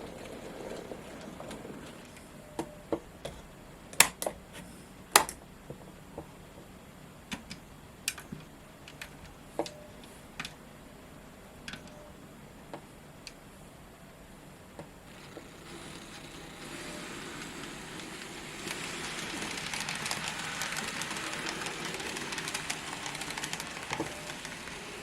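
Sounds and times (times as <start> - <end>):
model railway clicks and ticks: 0.0 - 2.7, 7.3 - 9.8, 11.7 - 12.0, 14.8 - 25.0.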